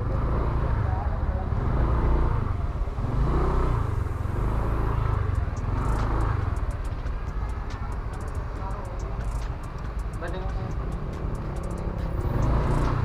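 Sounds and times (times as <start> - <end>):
scooter engine running: 2.6 - 13.0.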